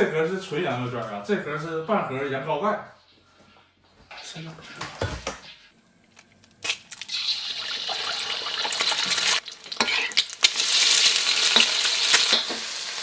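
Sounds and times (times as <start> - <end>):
food sizzling in a pan: 6.9 - 13.0.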